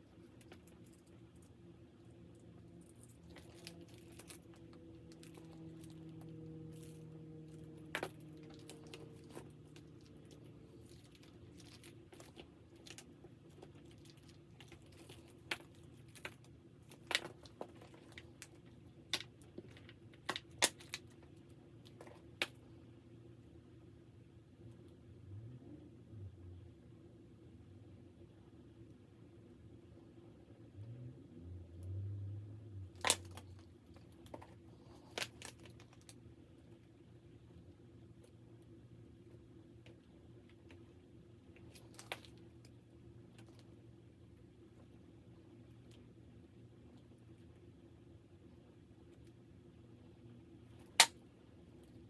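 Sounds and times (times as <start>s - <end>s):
faint steady hum: 0.0s - 52.0s
clicks of small hard pieces: 7.8s - 21.3s, 33.0s - 36.2s, 50.8s - 51.2s.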